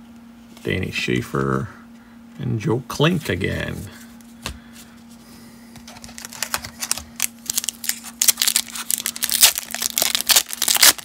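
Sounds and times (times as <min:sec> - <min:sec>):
foil wrapper tearing and crinkling: 0:05.9 - 0:11.0.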